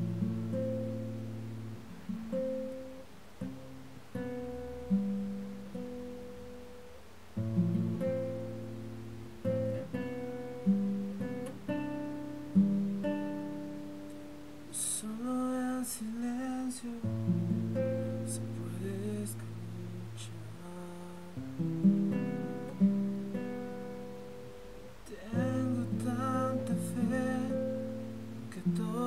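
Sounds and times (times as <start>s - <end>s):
acoustic guitar playing: 0.0s - 29.0s
person singing: 14.7s - 17.1s, 18.1s - 21.6s, 25.0s - 29.0s.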